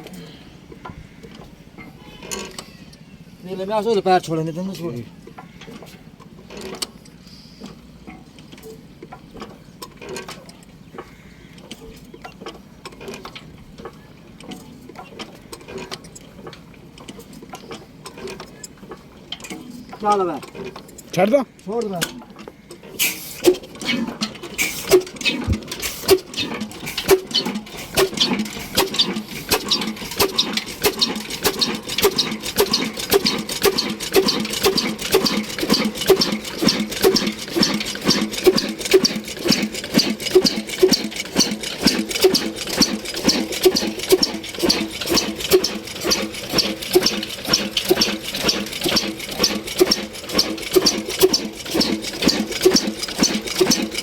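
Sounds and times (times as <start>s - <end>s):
diesel engine knocking rhythmically: 23.5s - 54.0s.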